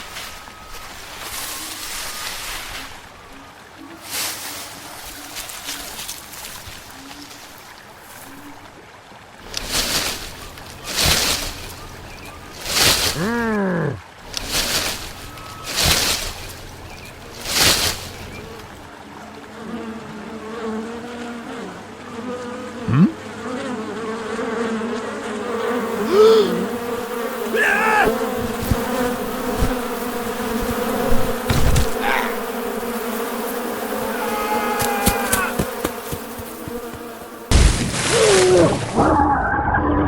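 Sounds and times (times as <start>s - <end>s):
insects buzzing: 0.0s - 8.8s, 9.4s - 38.6s
chirping: 10.1s - 13.3s, 14.3s - 18.9s
animal or bird calls: 15.1s - 18.8s.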